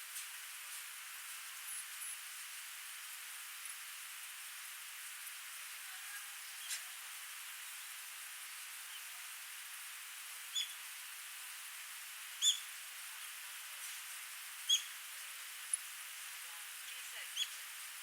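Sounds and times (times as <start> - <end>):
bird chirping: 10.5 - 10.8, 12.4 - 12.7, 14.7 - 14.9, 17.4 - 17.6.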